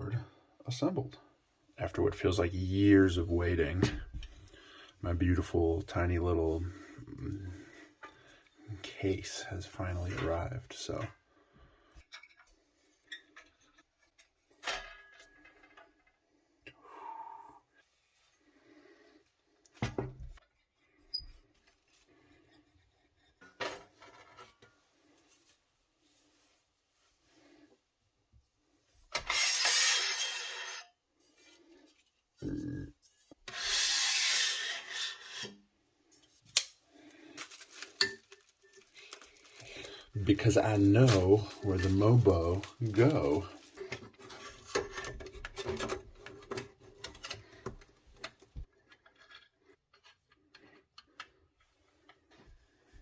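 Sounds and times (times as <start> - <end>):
rubbing scrape: 33.5 - 35.6.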